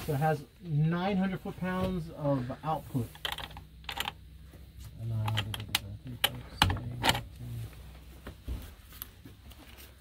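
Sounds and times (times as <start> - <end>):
sharp light clicks and taps: 4.8 - 7.4.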